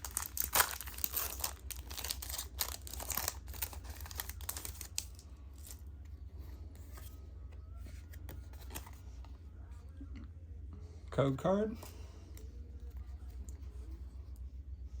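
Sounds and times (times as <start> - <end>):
foil wrapper tearing and crinkling: 0.0 - 5.8
handling of cards: 0.0 - 6.0, 6.7 - 9.4.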